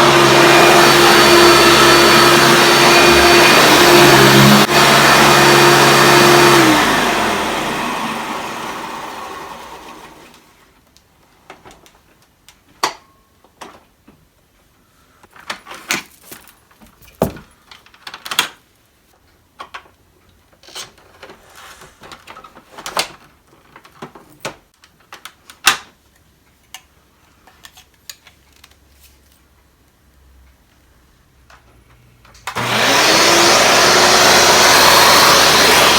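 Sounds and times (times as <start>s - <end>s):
vacuum motor winding down: 0.0s - 10.4s, 32.5s - 35.9s.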